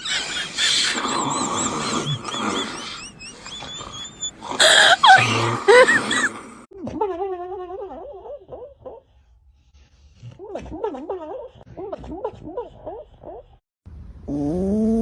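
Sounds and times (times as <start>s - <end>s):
person snoring with squeaky whistles: 0.0s - 6.2s, 14.3s - 15.0s.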